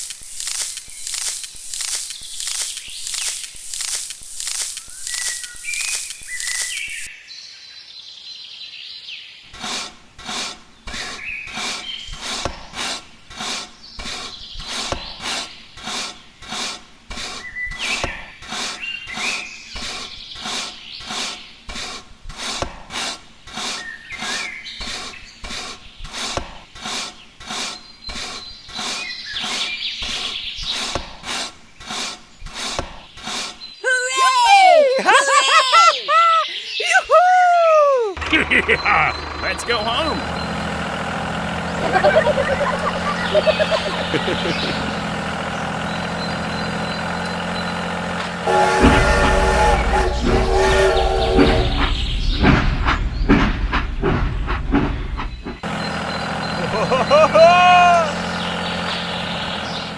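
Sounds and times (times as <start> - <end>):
hand tool rasping on wood: 12.2 - 17.4, 48.5 - 52.2.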